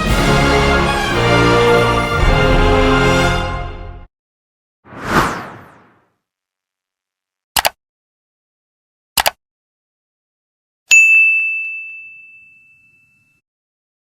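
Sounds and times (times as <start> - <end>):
double clicks: 7.6 - 7.8, 9.2 - 9.4
bell-like ding: 10.9 - 13.4.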